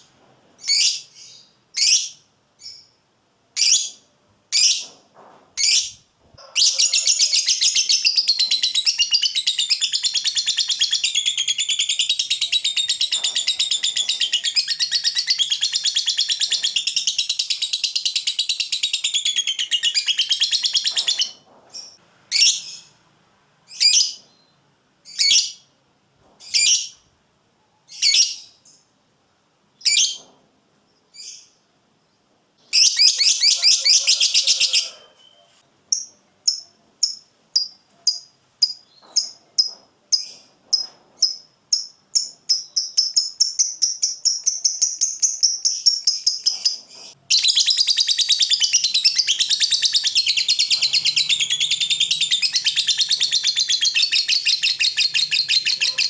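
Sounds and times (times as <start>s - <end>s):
lovebird calling and chattering: 5.6s - 22.9s, 32.8s - 40.4s, 41.2s - 56.0s.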